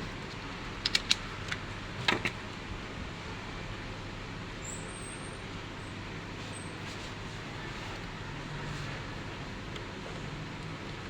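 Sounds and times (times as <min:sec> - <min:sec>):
steady background hum: 0:00.0 - 0:11.0
sharp clicks of computer parts: 0:00.2 - 0:02.4.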